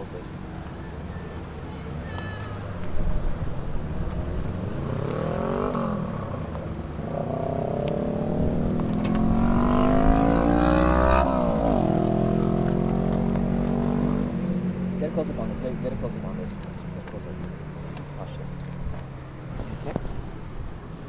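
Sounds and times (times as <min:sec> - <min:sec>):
car engine accelerating: 0:04.2 - 0:17.0.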